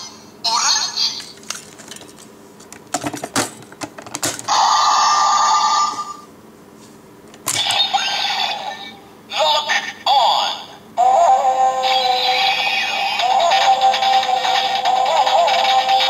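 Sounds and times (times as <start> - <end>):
toy electronic sound effects: 4.5 - 6.2, 7.5 - 9.0, 9.6 - 16.0.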